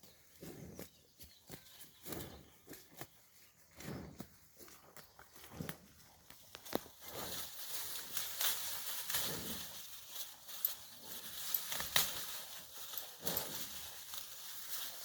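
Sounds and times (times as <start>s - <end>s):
leaves rustling: 6.4s - 15.0s.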